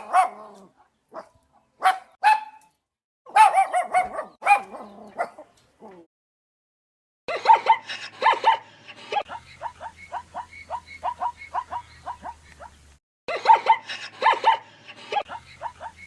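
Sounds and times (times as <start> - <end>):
dog barking: 0.0 - 2.6, 3.3 - 5.5, 7.3 - 12.8, 13.4 - 14.6.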